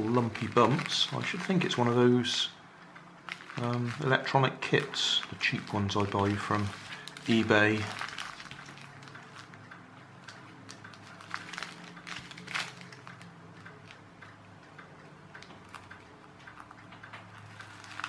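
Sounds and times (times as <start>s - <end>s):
package being handled: 3.3s - 9.6s, 11.0s - 13.2s, 17.6s - 18.0s.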